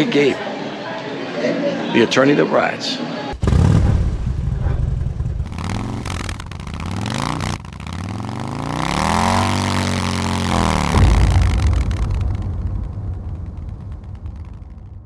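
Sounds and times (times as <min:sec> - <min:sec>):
motorcycle engine revving: 0:03.3 - 0:15.0.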